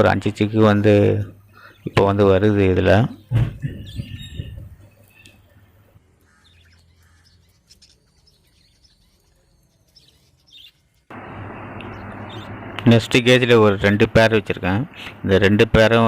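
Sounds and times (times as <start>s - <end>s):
pet birds chirping: 2.8s - 12.8s.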